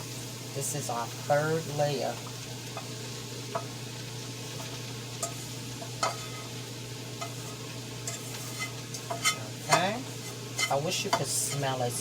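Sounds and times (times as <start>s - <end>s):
cabbage sizzling in a pot: 0.0s - 12.0s
utensils tapping a pot: 5.2s - 6.4s, 7.2s - 10.0s, 10.6s - 11.8s.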